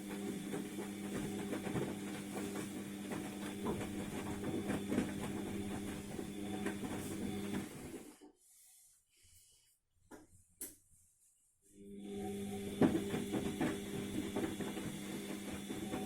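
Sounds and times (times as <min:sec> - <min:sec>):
washing machine motor hum: 0:00.0 - 0:08.2, 0:11.8 - 0:16.0.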